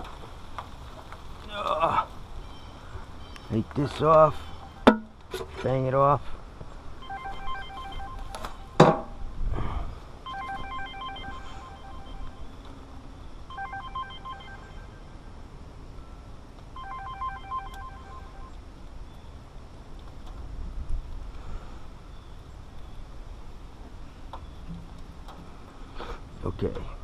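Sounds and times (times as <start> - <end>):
electronic telephone ringing: 7.0 - 8.8, 10.3 - 12.6, 13.5 - 15.2, 16.8 - 18.6.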